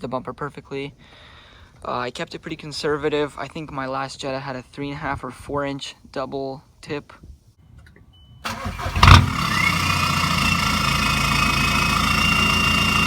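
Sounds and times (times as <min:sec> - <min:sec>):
diesel engine starting and idling: 0:08.4 - 0:13.0.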